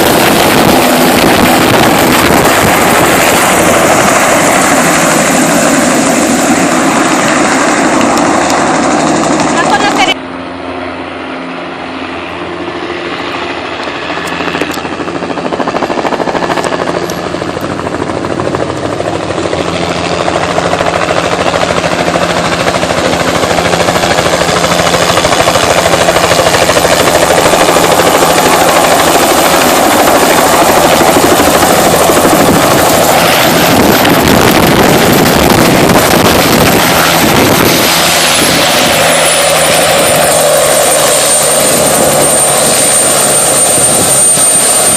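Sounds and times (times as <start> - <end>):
helicopter engine and rotor: 0.0 - 44.9.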